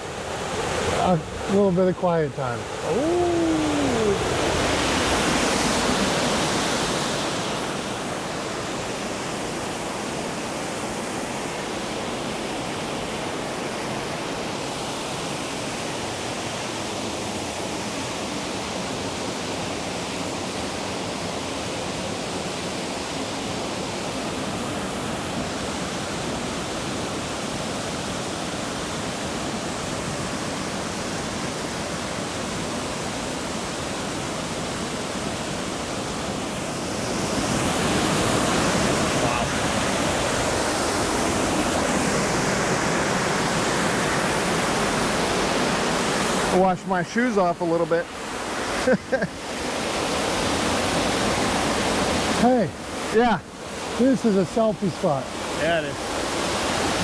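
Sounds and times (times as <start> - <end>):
waterfall rushing: 0.0 - 9.5, 34.2 - 57.0.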